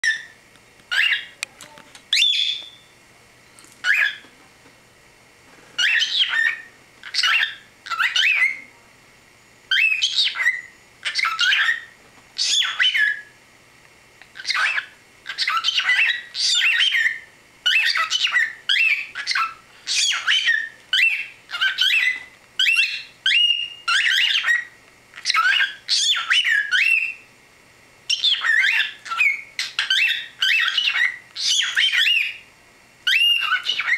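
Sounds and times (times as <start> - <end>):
cockatiel squawking and chirping: 0.9 - 1.4, 2.1 - 2.8, 3.8 - 4.2, 5.8 - 8.7, 9.7 - 13.3, 14.4 - 27.2, 28.1 - 32.4, 33.1 - 33.9.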